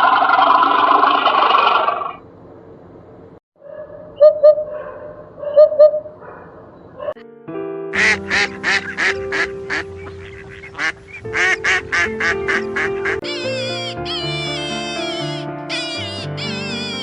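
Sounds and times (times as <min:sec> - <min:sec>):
background music: 0:07.2 - 0:17.0.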